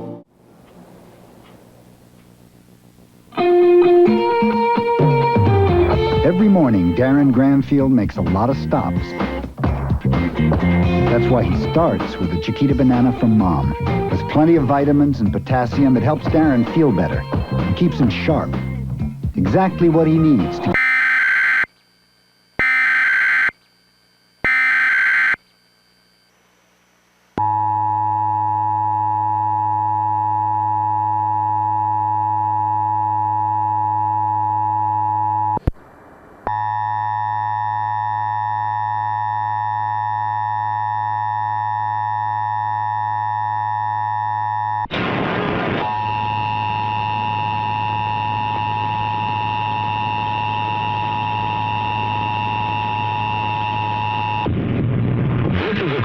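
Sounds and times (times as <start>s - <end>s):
distorted attention tone: 19.4s - 21.7s, 22.6s - 23.6s, 24.4s - 25.4s, 42.3s - 56.0s
screeching digital data bursts: 22.6s - 23.6s, 24.4s - 25.4s.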